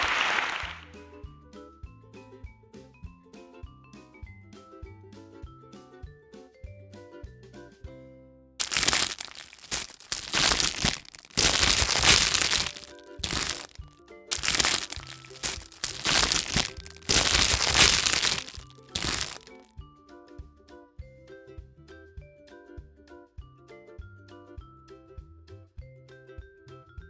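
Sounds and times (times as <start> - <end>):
foil wrapper crinkling: 8.6 - 19.6.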